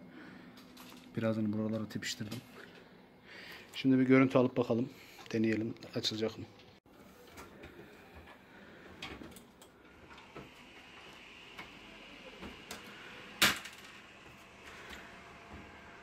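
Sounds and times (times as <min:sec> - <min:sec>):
computer cooling fans whirring: 0:07.0 - 0:16.0.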